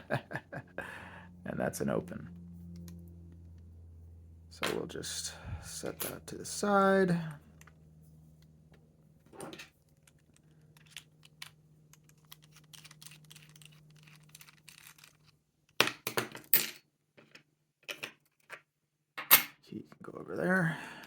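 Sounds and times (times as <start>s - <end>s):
small metallic clicks: 9.9s - 15.8s.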